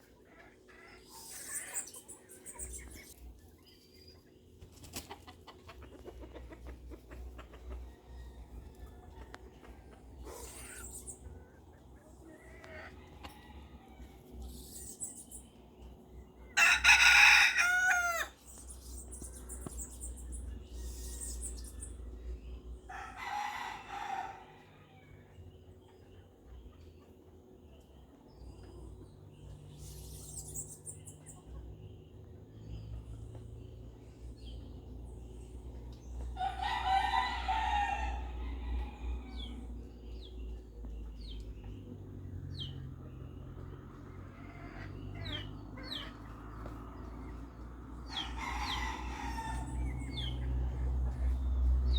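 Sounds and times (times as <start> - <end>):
small bird chirping: 0.8 - 6.4, 14.4 - 16.0, 18.4 - 22.2, 28.4 - 36.3
rooster crowing: 16.6 - 18.4, 22.9 - 25.0, 36.4 - 39.6, 48.1 - 50.4.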